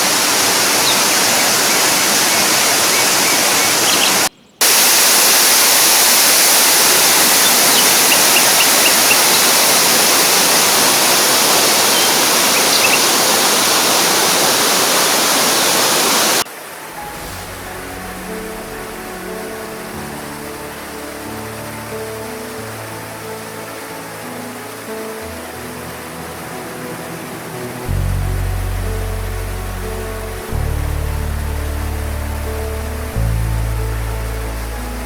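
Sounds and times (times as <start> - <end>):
waterfall rushing: 0.0 - 35.0
quiet music: 16.6 - 35.0.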